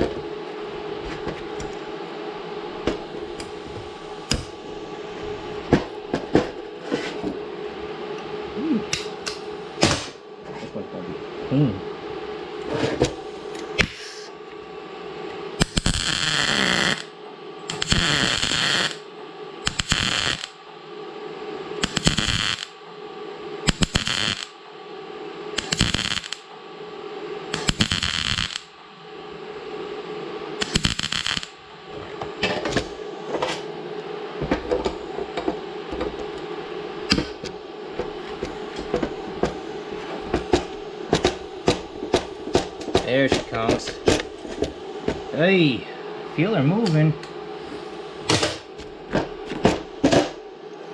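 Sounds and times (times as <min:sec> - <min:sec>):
steady hum: 0:00.0 - 0:50.9
welding arc crackling: 0:02.8 - 0:06.6, 0:15.6 - 0:20.6, 0:21.8 - 0:22.8, 0:23.6 - 0:24.6, 0:25.6 - 0:26.5, 0:27.5 - 0:28.8, 0:30.6 - 0:32.0, 0:37.0 - 0:39.6, 0:40.2 - 0:45.3
scattered clicks and knocks: 0:40.3 - 0:45.2.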